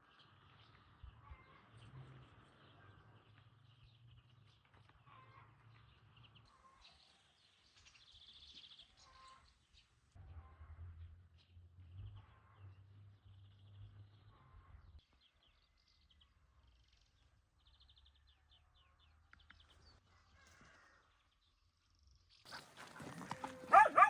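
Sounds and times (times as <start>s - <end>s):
small birds chirping and trilling: 22.5s - 24.0s.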